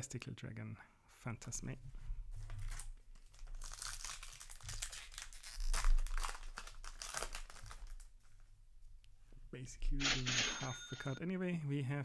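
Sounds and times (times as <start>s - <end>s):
foil wrapper crinkling and tearing: 2.5s - 8.2s.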